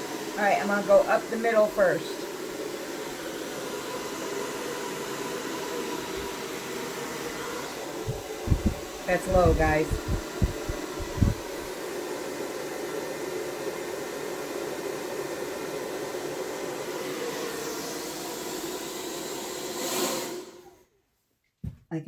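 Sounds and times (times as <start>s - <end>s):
hair dryer whoosh: 2.2s - 20.4s
low thumps: 8.1s - 11.7s.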